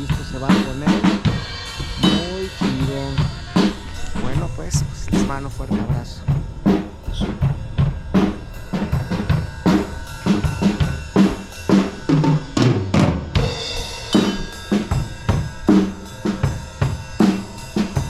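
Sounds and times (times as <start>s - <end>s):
cymbal wash: 0.0s - 18.0s.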